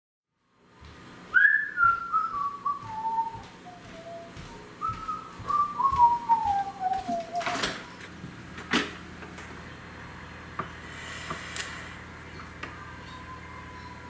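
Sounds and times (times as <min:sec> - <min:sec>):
person whistling a tune: 0:01.3 - 0:08.0.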